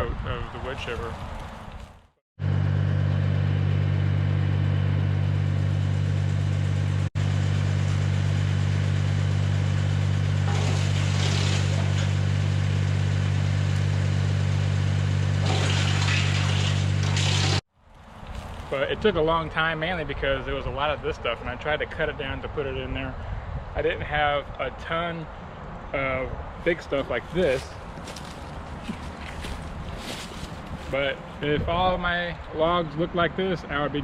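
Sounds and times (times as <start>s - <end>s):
tractor engine drone: 2.4s - 17.6s
wood chipper chipping wood: 2.9s - 17.6s.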